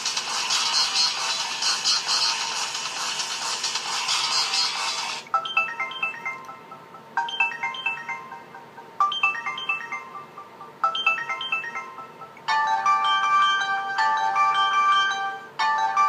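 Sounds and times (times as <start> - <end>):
ringtone with held notes: 0.1 - 16.0
descending chiming ringtone: 4.3 - 16.0.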